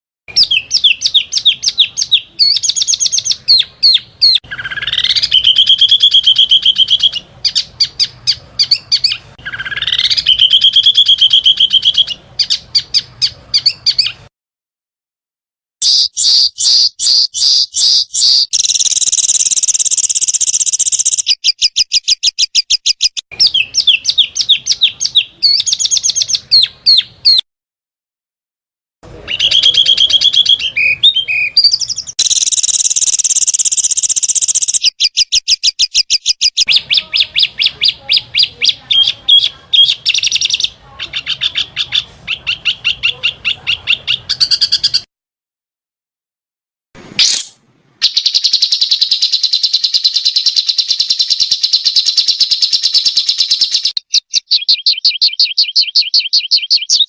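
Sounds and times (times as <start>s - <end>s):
songbirds chirping and trilling: 0.3s - 14.3s, 15.8s - 27.4s, 29.0s - 45.1s, 47.2s - 57.0s.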